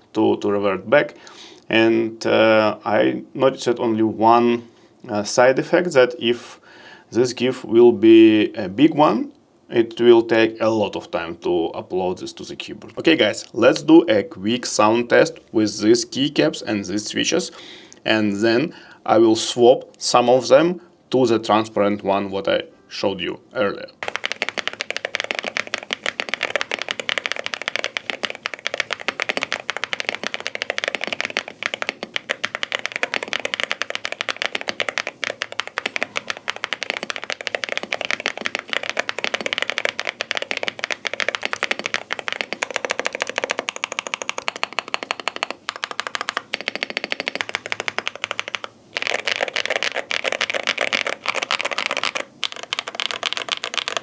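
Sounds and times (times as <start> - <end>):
fast mechanical keyboard typing: 24.0 - 54.0.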